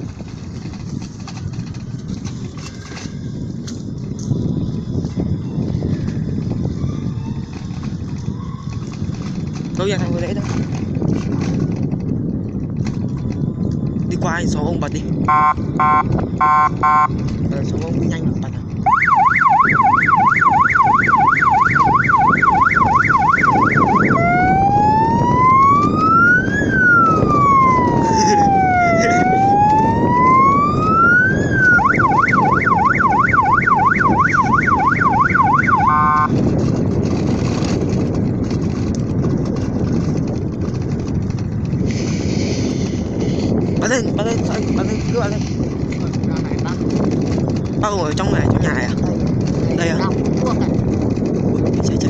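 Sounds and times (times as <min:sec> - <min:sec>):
electronic siren wail: 0:15.2 - 0:17.2, 0:18.8 - 0:36.3
electronic siren yelp: 0:15.3 - 0:17.1, 0:18.8 - 0:36.3.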